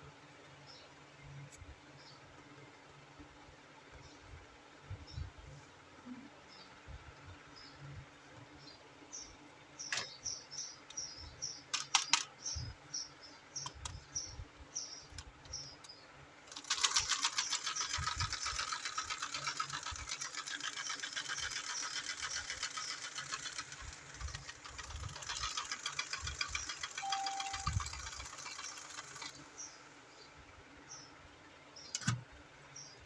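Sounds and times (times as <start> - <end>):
toy motor clicking rattle: 11.7 - 12.3, 16.5 - 29.5.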